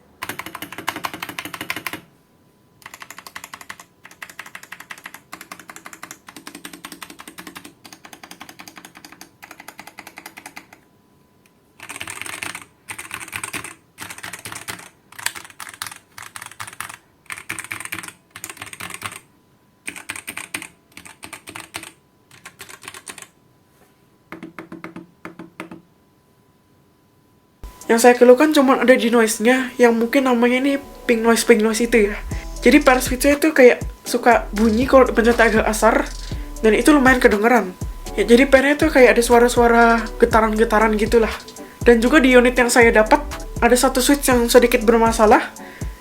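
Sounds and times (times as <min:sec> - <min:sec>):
mechanical keyboard typing: 0:00.2 - 0:02.1, 0:02.8 - 0:10.8, 0:11.8 - 0:23.4, 0:31.4 - 0:46.0.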